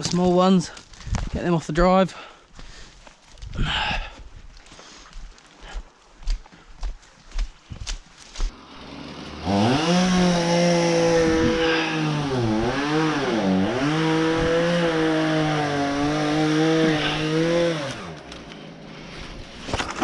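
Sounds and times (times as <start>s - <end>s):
chainsaw revving: 8.5s - 18.6s.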